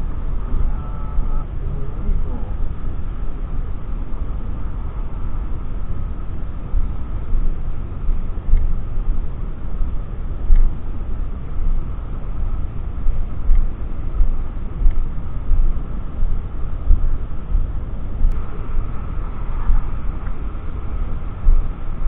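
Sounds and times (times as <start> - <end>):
wind buffeting microphone: 0.0 - 22.0.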